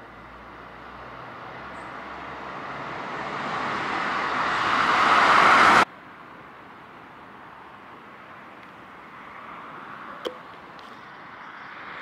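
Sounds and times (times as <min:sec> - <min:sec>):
vehicle approaching: 0:00.0 - 0:05.9.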